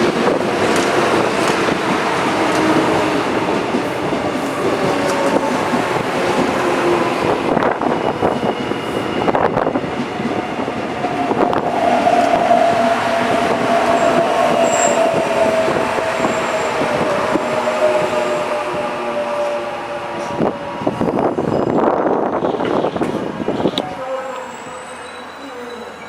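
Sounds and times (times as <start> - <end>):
wheels rumbling on rails: 0.0 - 26.0.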